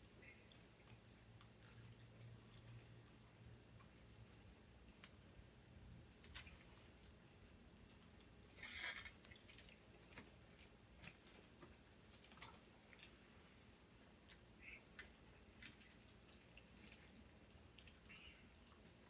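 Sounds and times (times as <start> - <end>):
chewing and mouth clicks: 0.5 - 4.0, 14.2 - 19.0.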